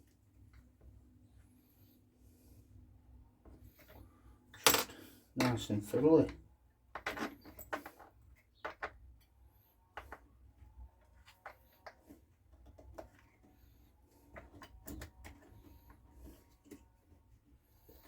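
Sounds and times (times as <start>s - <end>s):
low background hum: 0.0s - 18.0s
small tools clicking and knocking: 4.6s - 9.3s.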